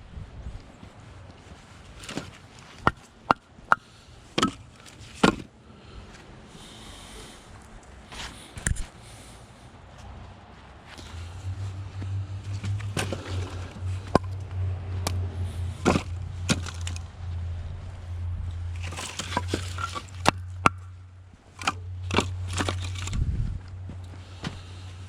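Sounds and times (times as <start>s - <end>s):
steady low hum: 2.9s - 25.0s
firewood knocking on pile: 4.4s - 5.5s, 12.6s - 14.4s, 15.8s - 17.0s, 18.8s - 20.8s, 21.6s - 23.1s.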